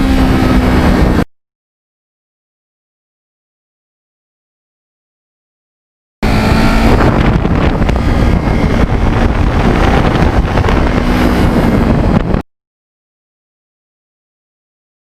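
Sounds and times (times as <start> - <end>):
wind buffeting microphone: 0.0 - 1.2, 6.2 - 12.4
motorcycle engine running: 0.0 - 1.3, 6.2 - 12.4.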